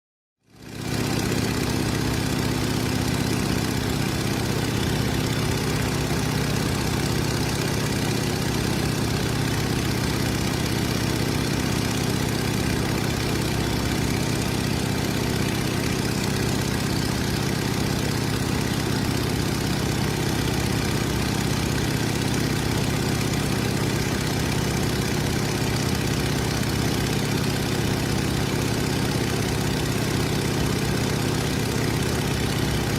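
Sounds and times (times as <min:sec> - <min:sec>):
propeller engine running: 0:00.5 - 0:32.9.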